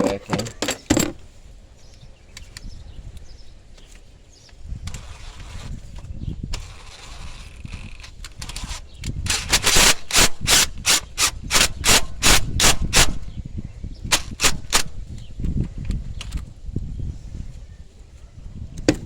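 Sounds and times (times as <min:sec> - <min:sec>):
hand ratchet clicking: 0:06.5 - 0:13.2.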